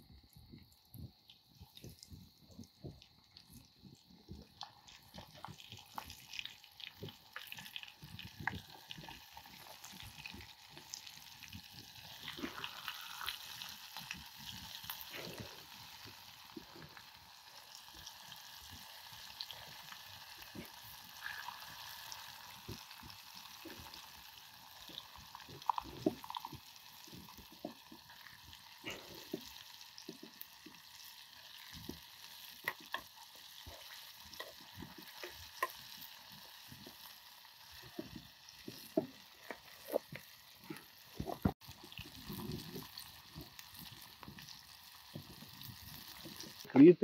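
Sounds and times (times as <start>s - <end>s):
fish sizzling in hot oil: 0.0s - 47.0s.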